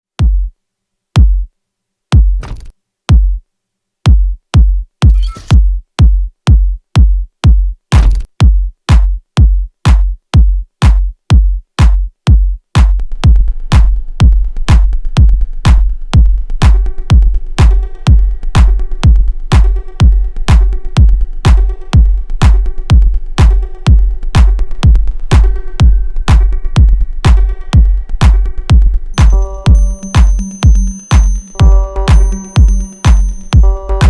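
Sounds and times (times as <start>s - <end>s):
snare or hi-hat hits: 2.2s - 3.2s, 7.9s - 9.2s, 13.7s - 14.0s, 22.4s - 23.7s, 25.3s - 25.5s, 28.2s - 34.0s
deep kick drum hits: 2.2s - 3.4s, 4.1s - 13.0s, 13.7s - 34.0s
pitched synth tones: 29.2s - 34.0s.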